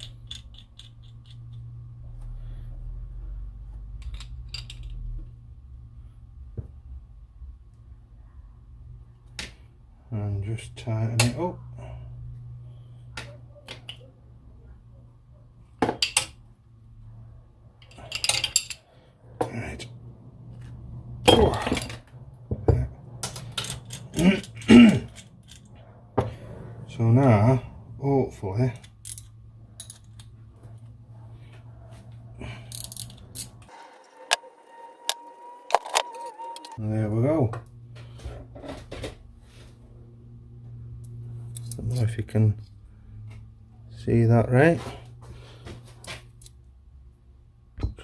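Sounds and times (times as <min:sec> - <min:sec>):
metallic tool clicks and rattles: 0:00.0 - 0:01.6
metal tools clinking: 0:00.0 - 0:01.7, 0:04.0 - 0:05.1, 0:17.8 - 0:19.0, 0:21.2 - 0:22.1, 0:23.2 - 0:25.8, 0:28.7 - 0:30.4, 0:32.4 - 0:33.7
steady low hum: 0:00.0 - 0:35.7, 0:36.7 - 0:48.0.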